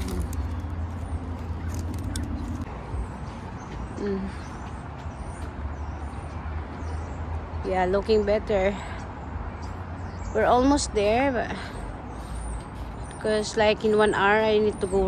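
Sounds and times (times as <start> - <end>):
low outdoor rumble: 0.0 - 5.9.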